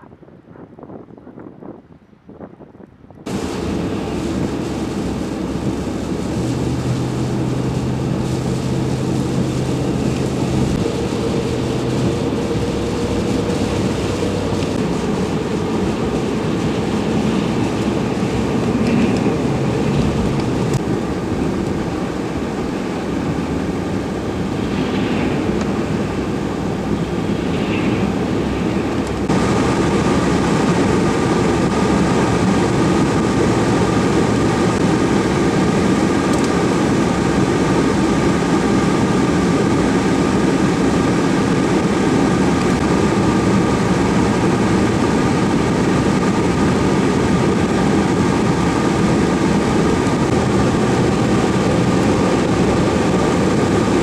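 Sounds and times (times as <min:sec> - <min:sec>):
heavy engine running: 0:03.2 - 0:54.0.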